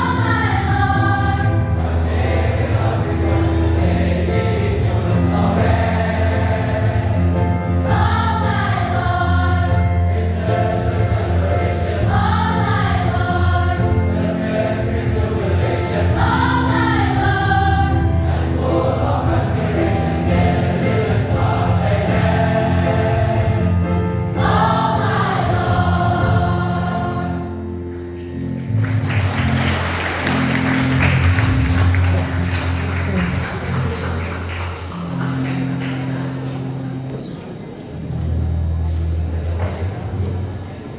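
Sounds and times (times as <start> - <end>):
choir singing: 0.0 - 27.9
low instrumental accompaniment: 0.0 - 40.9
applause: 28.0 - 36.7.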